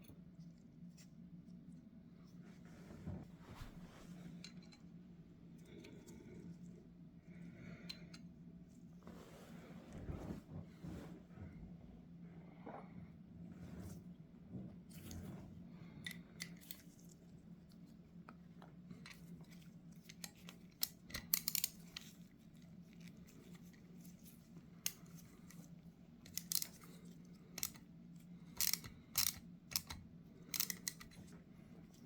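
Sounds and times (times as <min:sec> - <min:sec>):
faint steady hum: 0:00.0 - 0:32.0
small metal parts clicking and scraping: 0:20.0 - 0:22.2, 0:26.3 - 0:27.9, 0:28.5 - 0:31.3.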